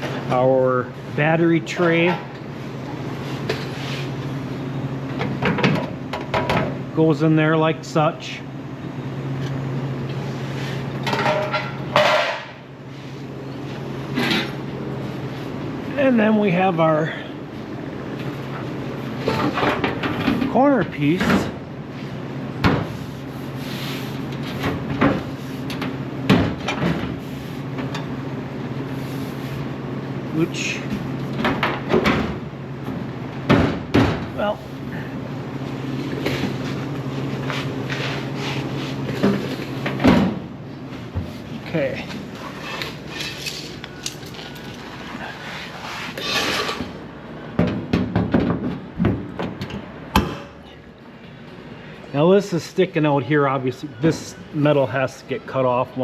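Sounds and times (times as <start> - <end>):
metal scraping and rubbing: 42.4 - 43.8, 45.4 - 47.0.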